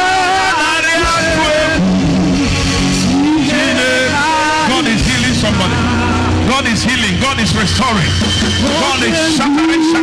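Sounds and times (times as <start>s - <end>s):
person singing: 0.0s - 6.7s
sustained keyboard chords: 1.0s - 10.0s.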